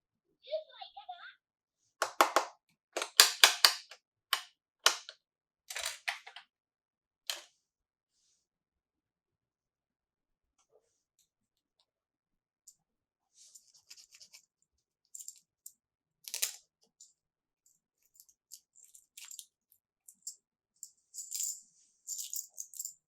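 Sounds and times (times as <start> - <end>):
plastic clicks and taps: 2.0 - 5.2.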